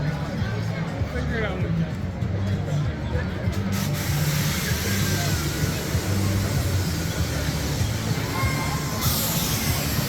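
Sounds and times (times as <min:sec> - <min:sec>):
music with pulsing bass: 0:00.0 - 0:10.0
outdoor noise rushing: 0:02.8 - 0:10.0.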